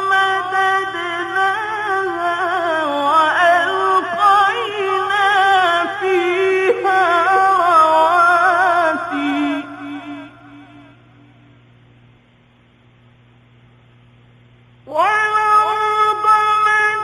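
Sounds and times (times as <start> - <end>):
man reciting melodically: 0.0 - 11.1, 14.9 - 17.0.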